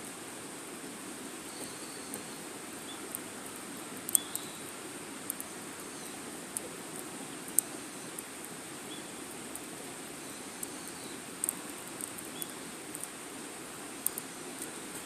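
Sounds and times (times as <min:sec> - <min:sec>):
wood fire crackling and popping: 0:02.9 - 0:04.6, 0:05.2 - 0:15.0.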